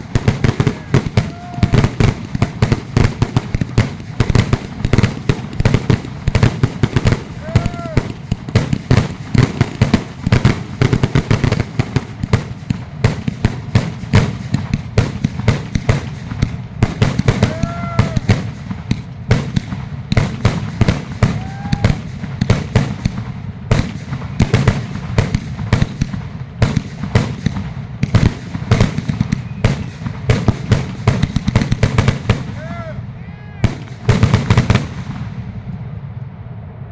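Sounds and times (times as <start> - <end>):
fireworks bangs and crackles: 0.0 - 33.0, 33.6 - 36.9
firework whistles: 29.1 - 30.1.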